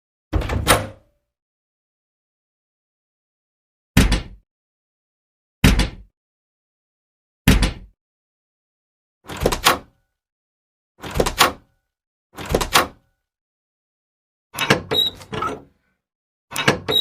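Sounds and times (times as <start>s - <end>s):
door shutting: 0.3s - 1.0s, 9.3s - 9.9s, 11.0s - 11.6s, 12.4s - 13.0s, 14.6s - 15.8s, 16.5s - 17.0s.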